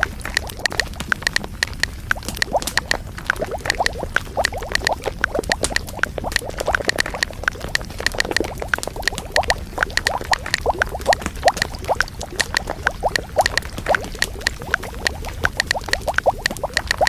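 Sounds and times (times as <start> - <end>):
water bubbling: 0.0 - 17.0.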